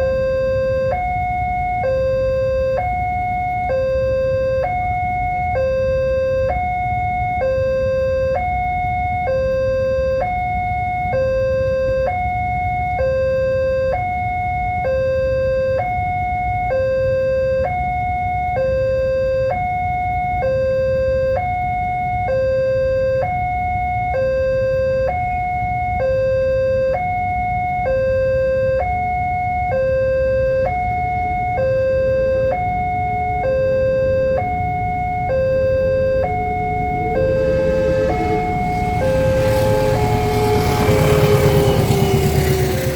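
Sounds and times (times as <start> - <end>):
two-tone crossing alarm: 0.0 - 42.9
steady low rumble: 32.7 - 42.9.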